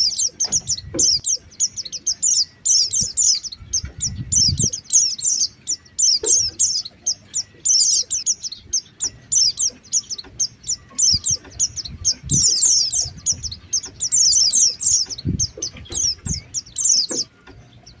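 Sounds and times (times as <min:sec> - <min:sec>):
birds chirping: 0:00.0 - 0:18.0
dull low thumps: 0:03.0 - 0:04.8, 0:08.5 - 0:18.0.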